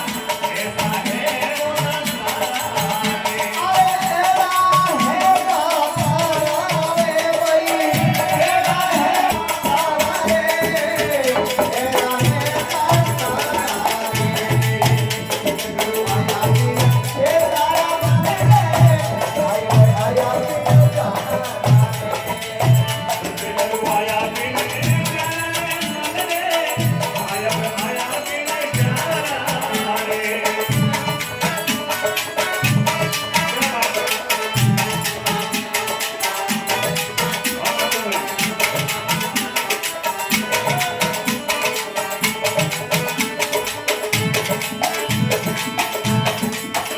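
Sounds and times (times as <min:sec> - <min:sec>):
jingling rattling percussion: 0:00.0 - 0:46.9
person singing devotional song: 0:00.0 - 0:46.9
hand drum beat: 0:01.9 - 0:28.0.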